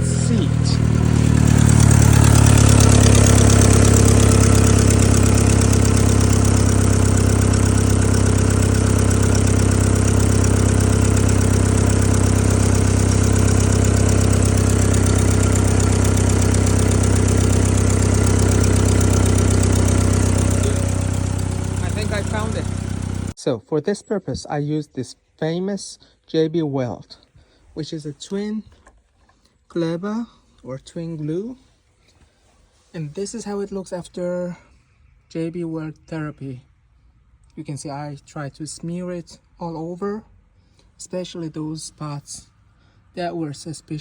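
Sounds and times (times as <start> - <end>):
car engine idling: 0.0 - 23.4
exhaust leak hissing: 0.0 - 23.4.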